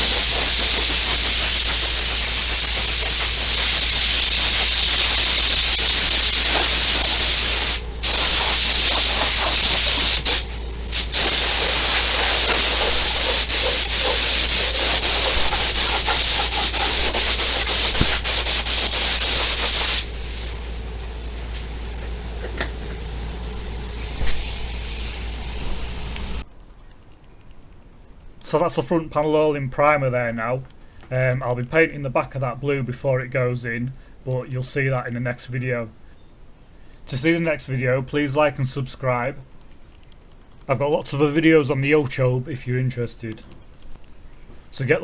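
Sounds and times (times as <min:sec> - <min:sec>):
spray paint hissing: 0:00.0 - 0:26.4.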